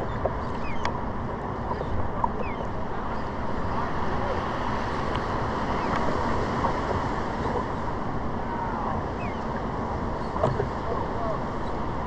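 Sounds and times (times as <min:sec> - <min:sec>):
ocean water washing: 0:00.0 - 0:12.0.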